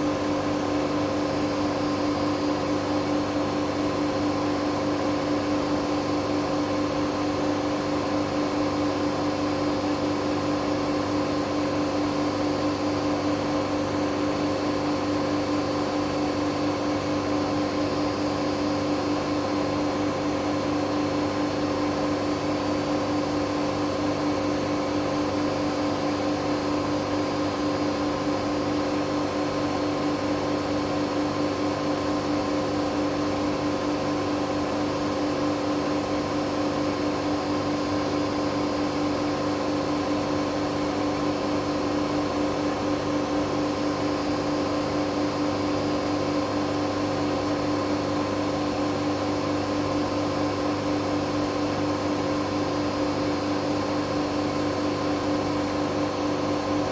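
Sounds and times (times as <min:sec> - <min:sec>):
washing machine spinning: 0:00.0 - 0:56.9.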